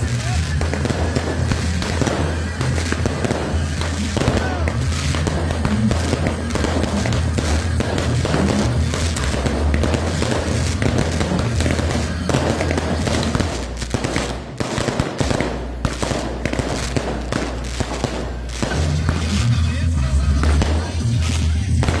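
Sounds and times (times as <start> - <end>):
fireworks bangs and crackles: 0.0 - 22.0
music playing: 0.0 - 22.0.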